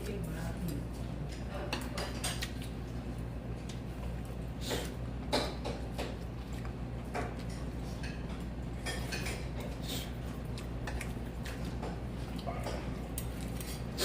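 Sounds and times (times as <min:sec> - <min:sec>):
dishes and utensils clinking: 0:01.3 - 0:02.8, 0:07.1 - 0:09.8.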